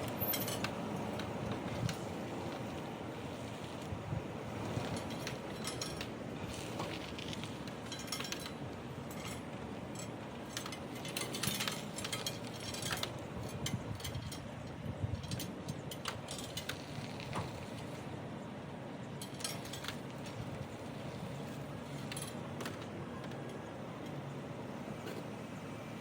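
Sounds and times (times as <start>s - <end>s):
metal clinks and rattles: 0.0s - 2.8s, 4.7s - 17.4s, 19.2s - 22.9s
wind on microphone: 13.4s - 15.4s.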